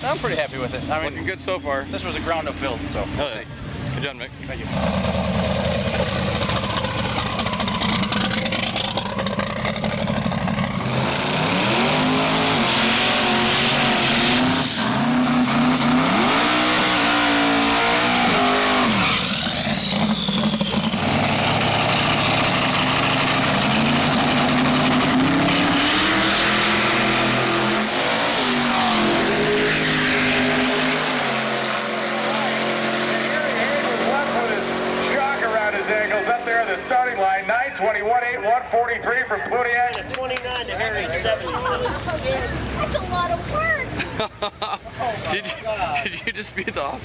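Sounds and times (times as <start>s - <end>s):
race car engine revving: 0.0s - 37.2s
turbo whistling: 18.9s - 22.5s.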